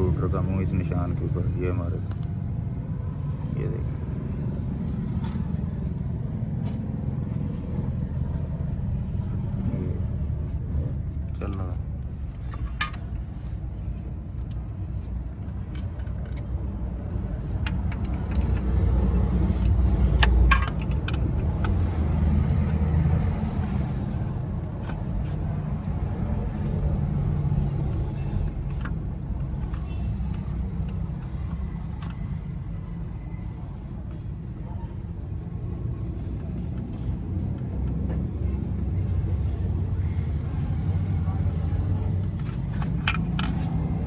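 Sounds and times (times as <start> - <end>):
light engine clicks and ticks: 15.3 - 33.1.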